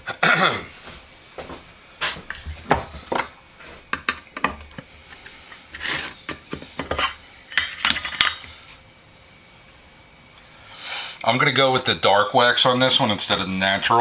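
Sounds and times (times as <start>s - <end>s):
objects knocking on wooden bench: 1.4s - 4.8s.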